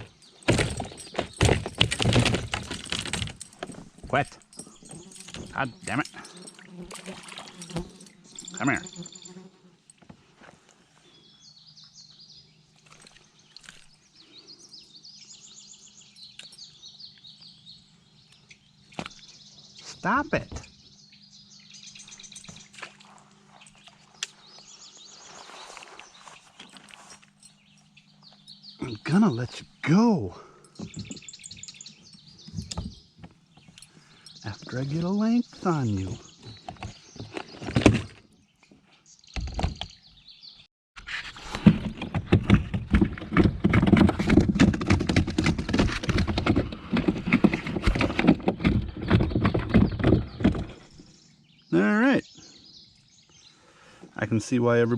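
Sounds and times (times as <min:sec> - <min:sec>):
fish thrashing on boat floor: 0:00.0 - 0:04.0
soft rustle: 0:22.5 - 0:27.6.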